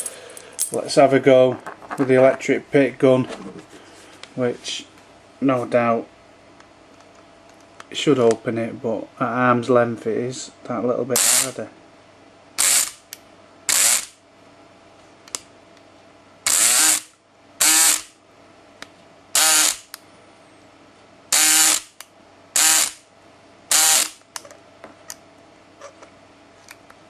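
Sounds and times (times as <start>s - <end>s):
electric lock pick gun buzzing: 11.2s - 11.6s, 12.6s - 14.2s, 16.4s - 18.2s, 19.3s - 20.0s, 21.3s - 23.0s, 23.7s - 24.3s.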